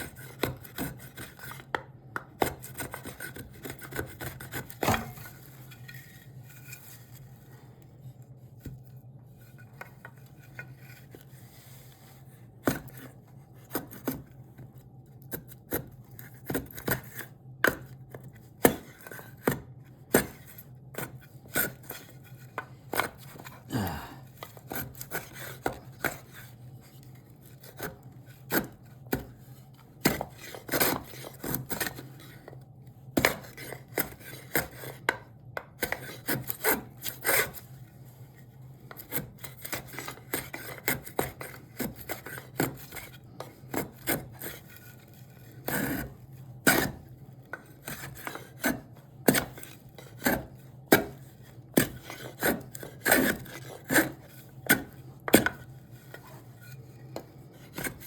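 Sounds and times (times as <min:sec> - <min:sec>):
scraping strokes on wood: 0:20.1 - 0:32.5, 0:38.9 - 0:58.0
steady low hum: 0:20.1 - 0:34.4.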